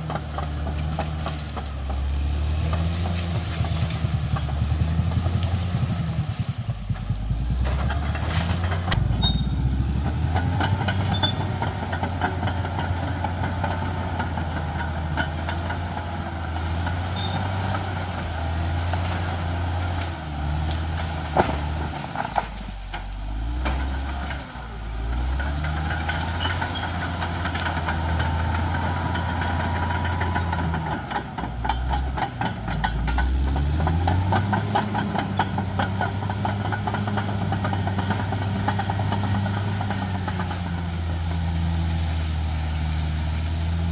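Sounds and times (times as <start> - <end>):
steel tracks rattling and clanking: 0.0 - 42.1
bulldozer diesel engine: 0.0 - 43.9.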